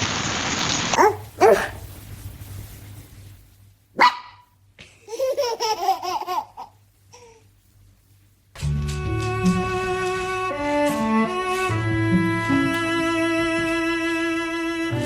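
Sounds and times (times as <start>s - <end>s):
dog barking and yelping: 0.9s - 2.0s, 4.0s - 4.5s.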